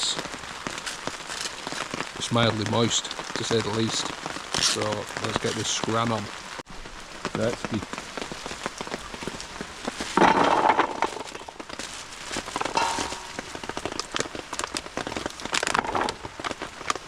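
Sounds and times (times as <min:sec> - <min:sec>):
rain on canvas tent: 0:00.0 - 0:17.0
cooking handling noise: 0:12.4 - 0:14.2.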